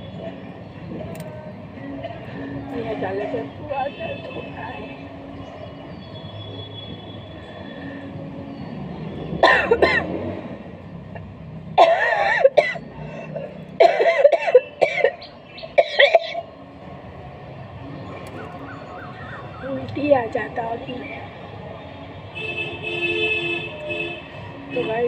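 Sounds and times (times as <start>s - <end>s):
woman coughing: 9.4s - 10.1s, 11.8s - 12.8s, 13.8s - 15.2s, 15.8s - 16.4s.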